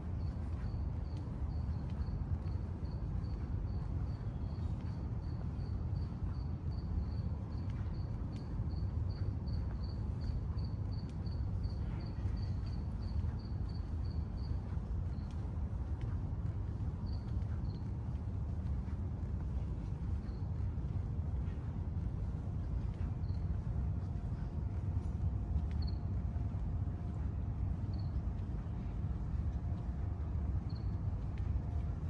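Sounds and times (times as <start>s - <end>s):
low rumble of city ambience: 0.0s - 32.0s
cricket chirping: 25.7s - 26.0s, 27.9s - 28.2s.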